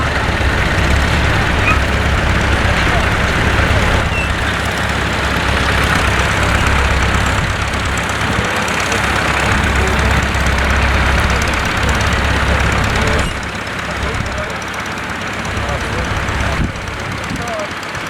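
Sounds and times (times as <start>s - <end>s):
tractor engine running: 0.0s - 18.0s.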